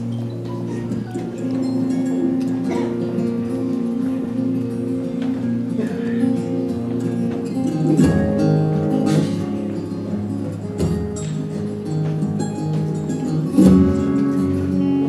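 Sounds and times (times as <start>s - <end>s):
acoustic guitars strumming: 0.0s - 15.0s
held notes: 0.0s - 15.0s.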